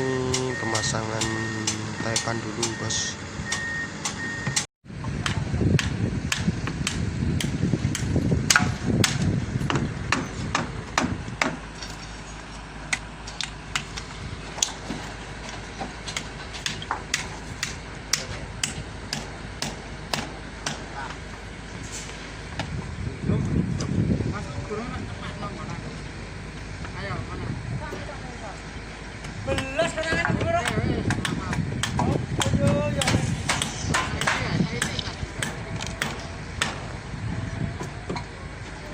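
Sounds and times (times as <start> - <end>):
hammering on a building site: 0.1 - 12.0, 14.6 - 21.3, 29.2 - 37.1.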